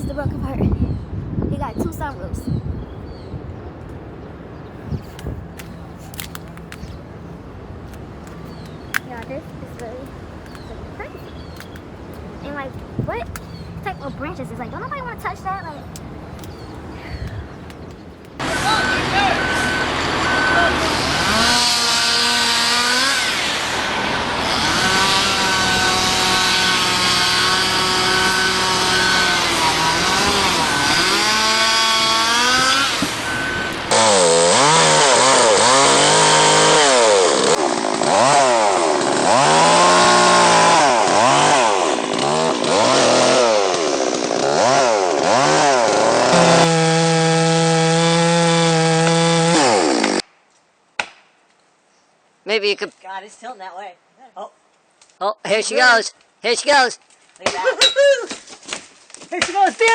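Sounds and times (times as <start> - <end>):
chainsaw revving cutting wood: 18.4 - 50.2.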